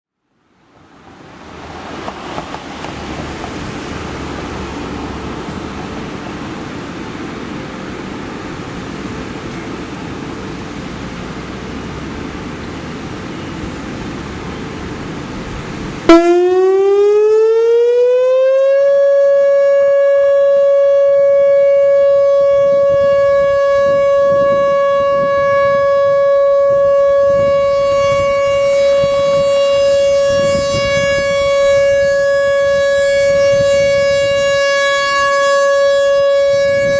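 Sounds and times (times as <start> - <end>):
steady rushing noise: 0.5 - 16.9
outdoor warning siren: 13.0 - 36.9.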